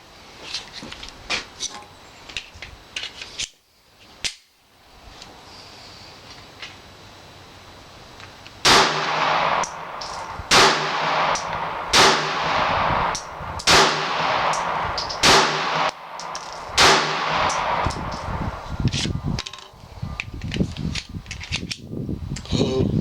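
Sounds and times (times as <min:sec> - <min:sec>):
pistol shots with echo: 0:08.6 - 0:18.6
small metallic clicks: 0:17.5 - 0:22.5.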